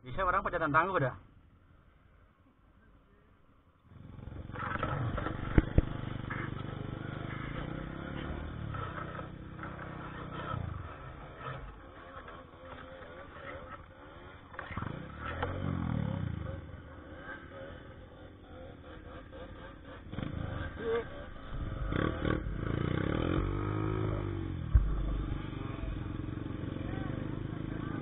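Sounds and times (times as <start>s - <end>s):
motorcycle engine revving: 3.8s - 28.0s.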